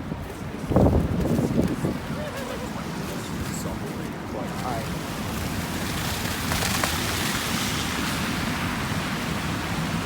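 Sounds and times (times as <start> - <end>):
wind on microphone: 0.0 - 3.5
street traffic: 0.0 - 10.0.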